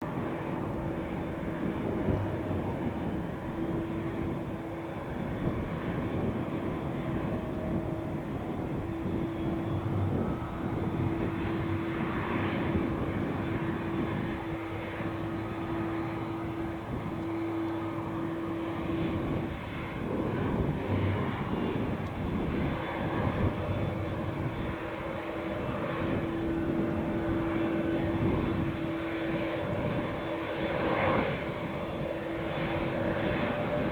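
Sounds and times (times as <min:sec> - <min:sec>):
airplane engine drone: 0:00.0 - 0:33.9.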